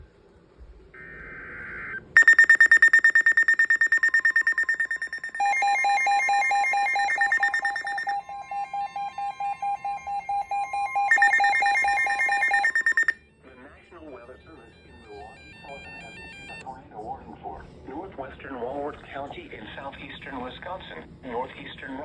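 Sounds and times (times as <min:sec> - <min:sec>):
lower pulsing beep: 0:02.2 - 0:13.2
rapid high pulsing beeps: 0:02.2 - 0:13.2.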